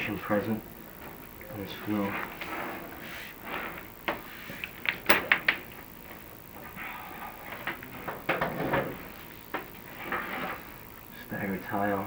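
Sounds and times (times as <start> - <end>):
cable scraping in chimney: 1.8 - 4.8, 9.8 - 10.8.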